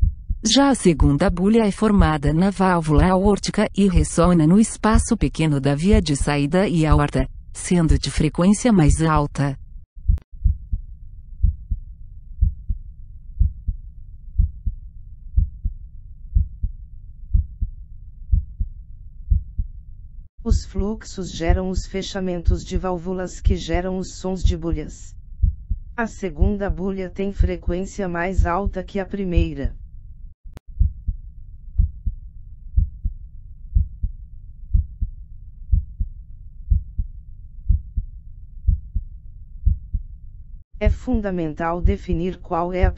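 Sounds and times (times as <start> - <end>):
heartbeat lub-dub: 0.0 - 8.2, 10.0 - 10.8, 11.4 - 11.8, 12.4 - 12.8, 13.4 - 13.8, 14.4 - 14.8, 15.4 - 19.7, 23.7 - 29.8, 30.5 - 31.2, 31.8 - 32.2, 32.8 - 35.1, 35.7 - 37.1, 37.7 - 40.1.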